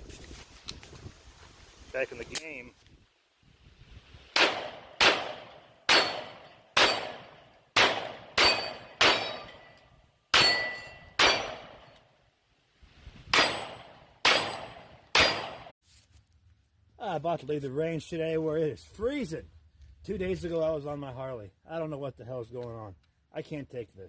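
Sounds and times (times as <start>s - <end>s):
pistol shots with ringing tail: 4.4s - 12.0s, 13.3s - 15.7s.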